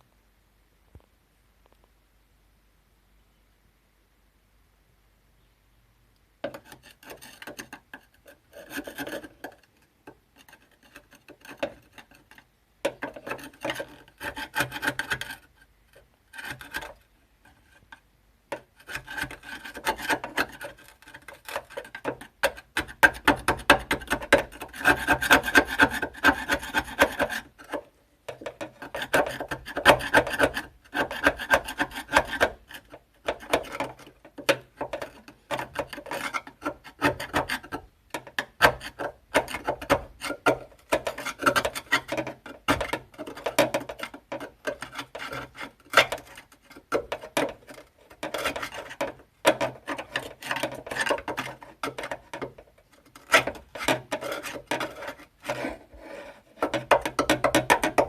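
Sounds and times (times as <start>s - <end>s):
hand sanding steel bodywork: 28.4s - 34.0s.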